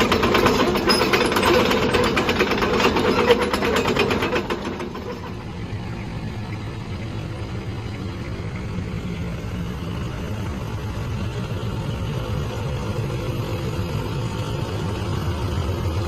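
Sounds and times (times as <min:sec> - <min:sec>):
fast rattle: 0:00.0 - 0:05.5.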